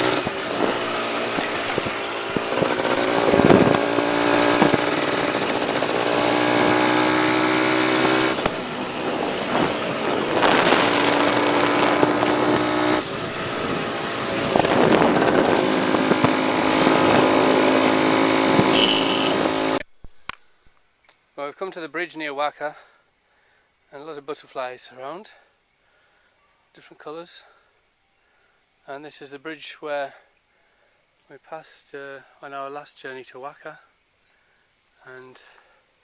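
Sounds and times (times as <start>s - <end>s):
motorbike engine revving: 0.0s - 19.8s.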